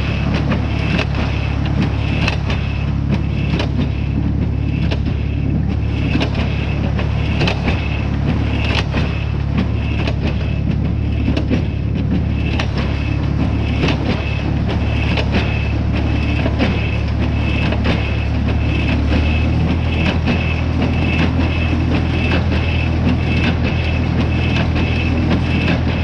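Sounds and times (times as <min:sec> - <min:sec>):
baler mechanism clattering: 0:00.0 - 0:26.0
tractor engine drone: 0:00.0 - 0:26.0.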